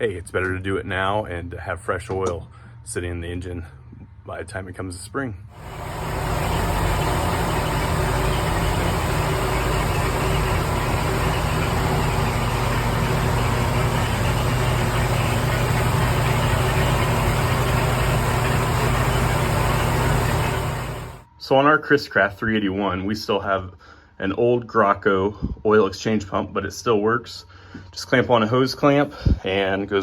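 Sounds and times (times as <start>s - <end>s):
boat engine idling: 5.6s - 21.3s.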